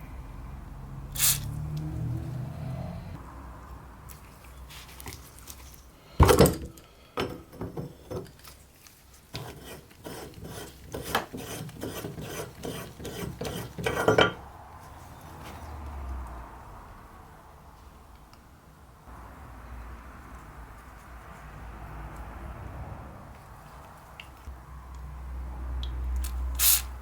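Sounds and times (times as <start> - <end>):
hand tool rasping on metal: 9.4 - 14.4.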